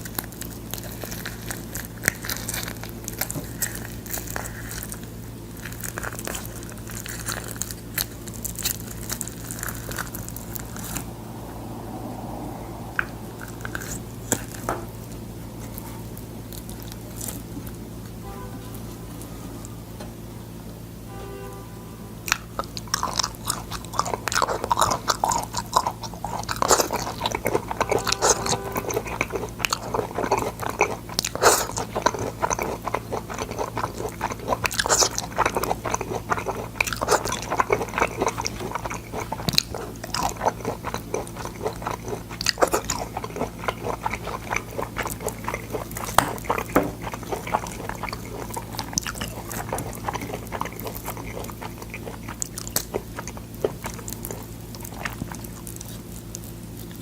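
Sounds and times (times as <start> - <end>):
crisp chewing crunches: 0.0 - 11.7, 12.8 - 19.8, 22.3 - 57.0
steady low hum: 0.0 - 57.0
wet mouth clicks: 22.3 - 57.0.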